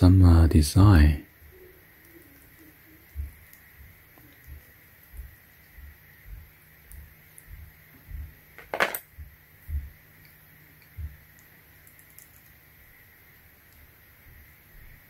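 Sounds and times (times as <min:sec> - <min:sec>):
pliers knocking and clinking: 0:08.6 - 0:09.0.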